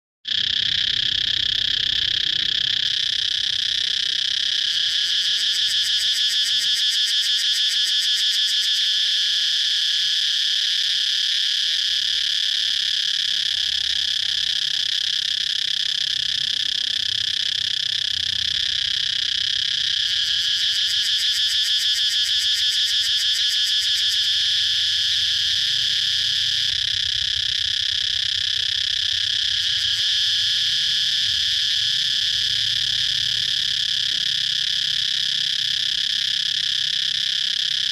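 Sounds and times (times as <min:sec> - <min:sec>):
cicadas droning: 0:00.3 - 0:37.9.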